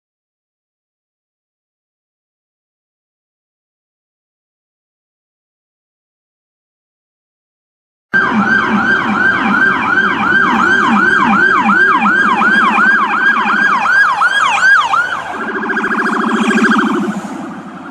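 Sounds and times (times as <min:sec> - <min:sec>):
electronic siren: 0:08.2 - 0:17.9.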